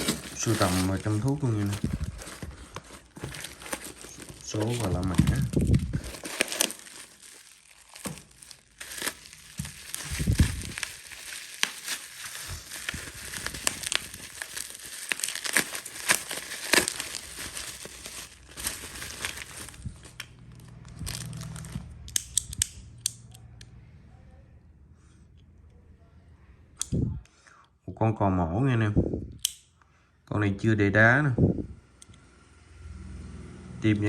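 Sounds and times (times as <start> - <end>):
packaging crumpling and tearing: 0.0 - 21.9.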